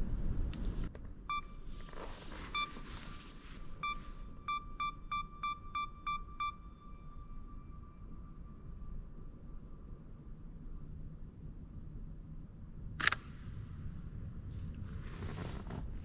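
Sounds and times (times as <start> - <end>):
pinging beeps: 1.3 - 1.6, 3.8 - 7.9.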